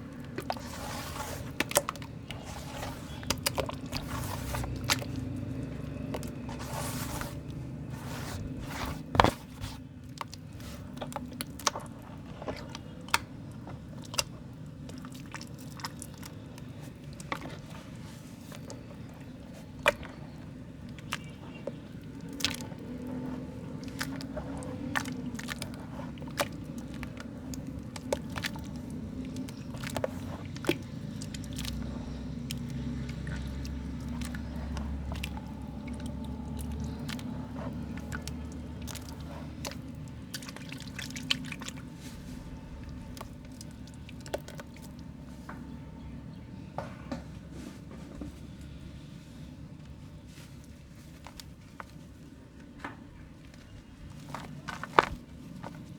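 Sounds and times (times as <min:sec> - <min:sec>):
mud crumbling by hand: 0:00.0 - 0:46.4, 0:48.2 - 0:55.9.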